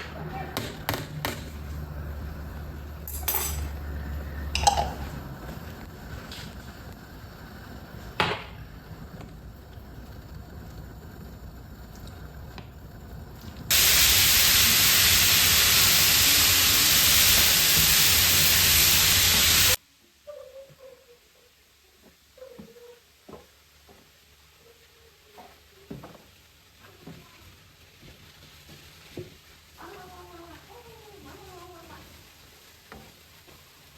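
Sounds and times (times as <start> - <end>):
loud even hiss: 0.9 - 19.8.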